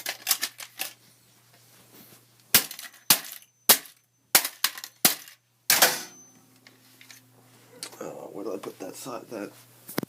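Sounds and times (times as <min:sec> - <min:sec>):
computer parts hitting pc case: 0:02.5 - 0:06.3.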